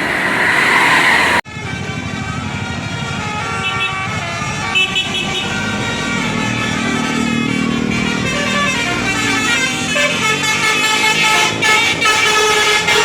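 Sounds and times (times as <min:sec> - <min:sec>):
loud rushing noise: 0:00.0 - 0:01.4
bus musical horn tune: 0:01.5 - 0:13.0.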